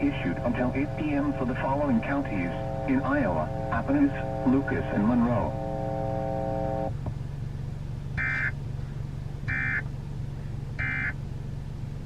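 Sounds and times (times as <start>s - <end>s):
digital data tone bursts: 0.0s - 6.9s
steady low hum: 0.0s - 12.0s.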